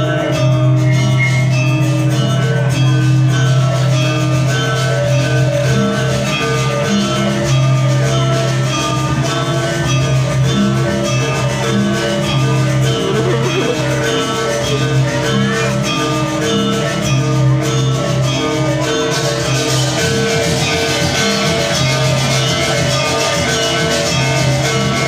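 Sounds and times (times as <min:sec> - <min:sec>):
steady bass line: 0:12.7 - 0:15.5
plucked guitar-like melody: 0:12.8 - 0:15.6.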